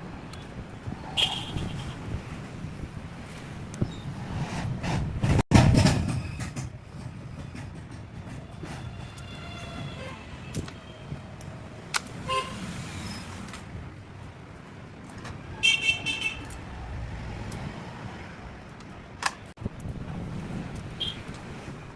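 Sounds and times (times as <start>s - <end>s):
street traffic: 0.0s - 21.9s
sharp clicks: 11.4s - 12.2s.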